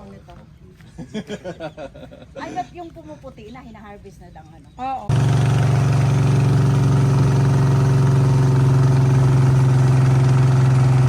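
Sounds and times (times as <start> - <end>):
boat engine running: 5.1 - 11.0.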